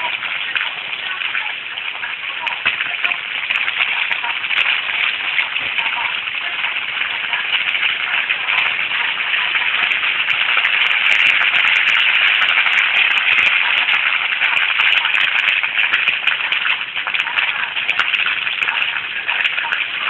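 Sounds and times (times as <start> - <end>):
fire crackling and popping: 0.0 - 20.0.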